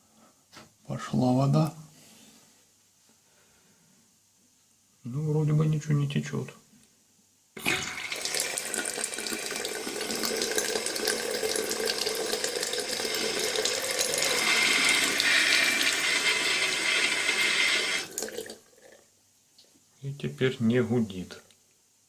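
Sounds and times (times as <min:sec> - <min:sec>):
water running from tap: 0:07.6 - 0:18.6.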